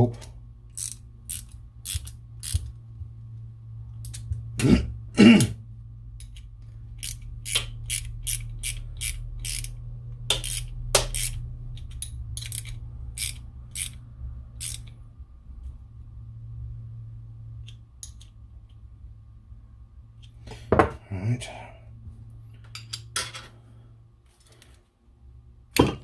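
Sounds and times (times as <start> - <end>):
hand ratchet clicking: 0.7 - 2.7, 7.0 - 14.0, 14.6 - 14.9.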